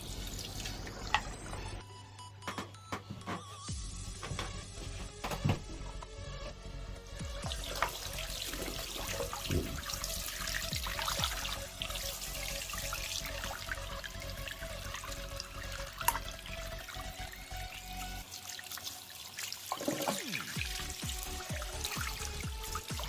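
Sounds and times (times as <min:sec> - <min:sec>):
tap water splashing in sink: 0:00.0 - 0:01.6, 0:07.5 - 0:12.0, 0:15.6 - 0:16.5, 0:18.3 - 0:23.0.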